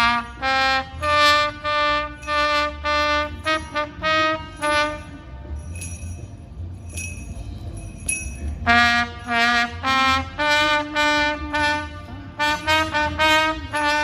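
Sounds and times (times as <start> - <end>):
brass instrument playing: 0.0 - 5.3, 8.6 - 14.0
light bell rings: 2.1 - 9.4.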